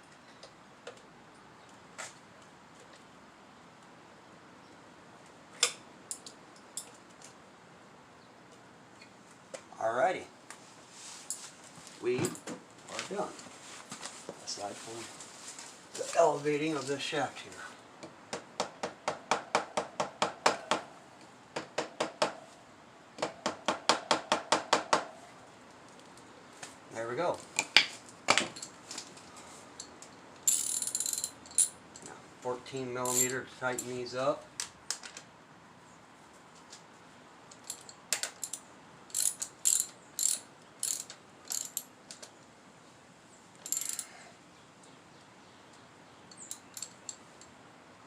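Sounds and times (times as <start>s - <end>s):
ratchet wrench clicking: 30.4s - 31.7s, 37.6s - 41.9s, 43.6s - 44.2s.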